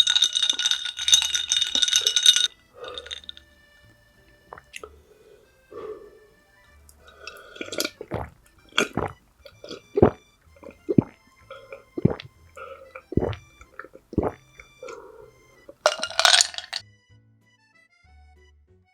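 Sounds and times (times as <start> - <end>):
biting and chewing: 0.0 - 3.5, 6.9 - 16.8
soft background music: 0.0 - 18.9
noisy mouth sound: 4.5 - 16.8.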